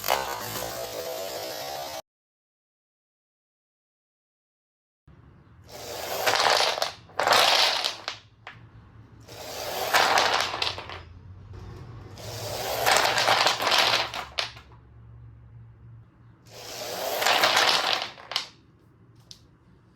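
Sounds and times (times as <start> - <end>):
plastic pieces rattling and scraping: 5.8 - 8.6, 9.3 - 11.1, 12.2 - 14.8, 16.5 - 18.6.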